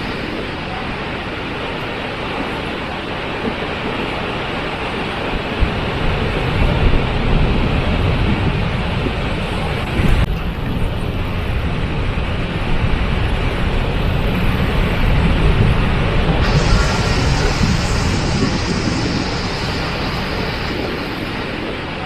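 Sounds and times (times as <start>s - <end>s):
waterfall rushing: 16.3s - 22.0s.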